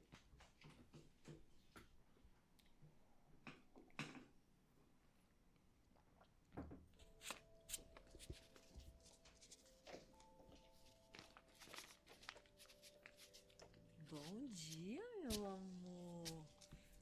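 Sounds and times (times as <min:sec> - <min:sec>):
soft background music: 0:06.3 - 0:17.0.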